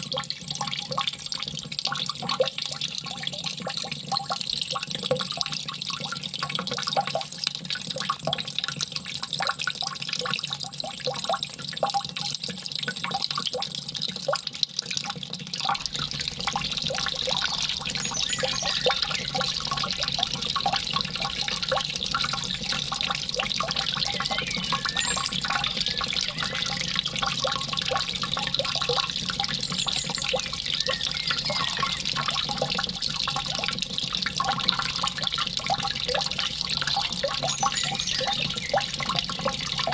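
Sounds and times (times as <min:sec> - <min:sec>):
water trickling and splashing: 0:00.0 - 0:39.9
faint high chirps: 0:15.8 - 0:32.9, 0:36.2 - 0:39.9.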